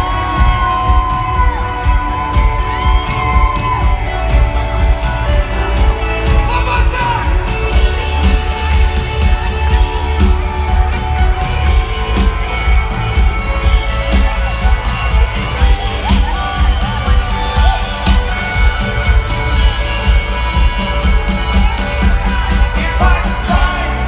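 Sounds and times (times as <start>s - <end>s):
heavy bass: 0.0s - 24.0s
live rock band playing: 0.0s - 24.0s.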